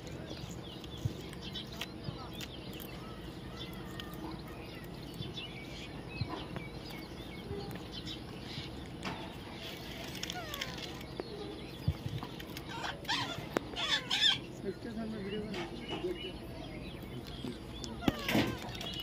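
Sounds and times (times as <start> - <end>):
parrot chirping: 9.4 - 14.6.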